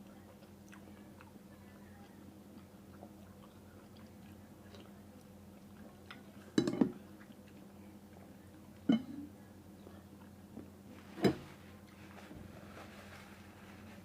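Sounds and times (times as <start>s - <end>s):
person chewing food: 0.0s - 1.4s, 2.0s - 8.8s.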